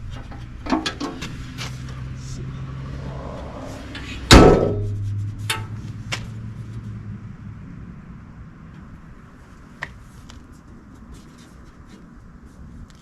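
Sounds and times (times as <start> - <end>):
steady low hum: 1.3 - 10.9
metal car door slamming: 4.3 - 5.0.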